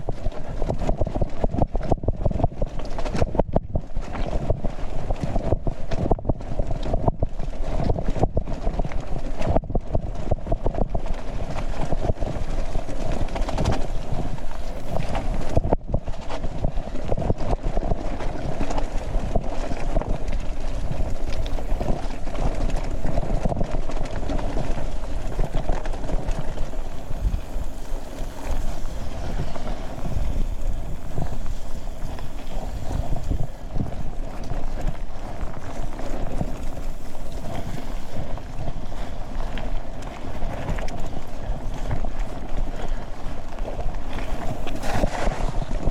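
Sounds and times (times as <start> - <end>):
wind rush on microphone: 0.0 - 45.9
bike tyre noise: 11.4 - 16.6, 18.8 - 45.8.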